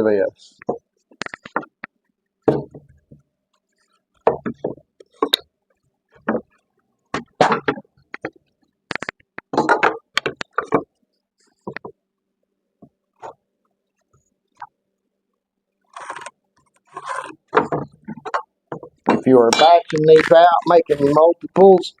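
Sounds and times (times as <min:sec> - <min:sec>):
wooden board scraping: 0:15.9 - 0:18.3, 0:19.1 - 0:21.2.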